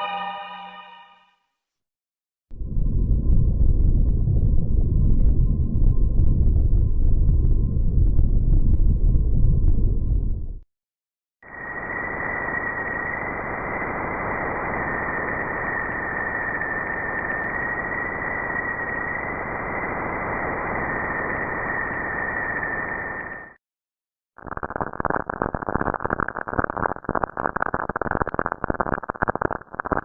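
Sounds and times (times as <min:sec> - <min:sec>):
high thin whistle: 0:00.0 - 0:01.3.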